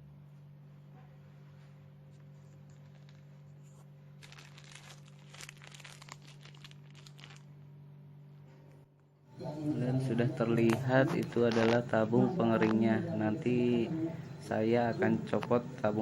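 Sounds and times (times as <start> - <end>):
steady low hum: 0.0 - 16.0
plastic crackling and rustling: 2.1 - 7.5, 11.2 - 11.8.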